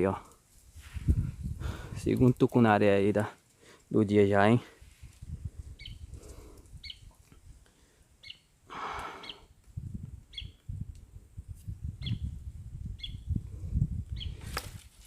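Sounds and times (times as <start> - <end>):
bird chirping: 5.8 - 6.1, 6.8 - 7.1, 8.2 - 8.5, 9.1 - 9.5, 10.3 - 10.6, 12.0 - 12.4, 13.0 - 13.3, 14.1 - 14.4.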